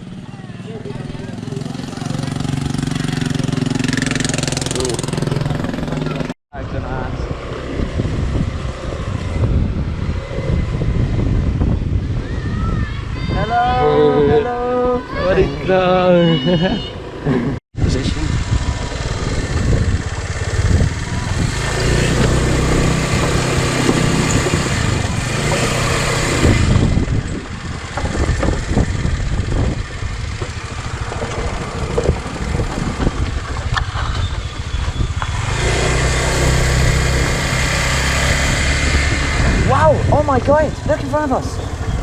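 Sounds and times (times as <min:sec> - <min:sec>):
small motorbike engine running: 0:00.0 - 0:06.3, 0:15.0 - 0:42.0.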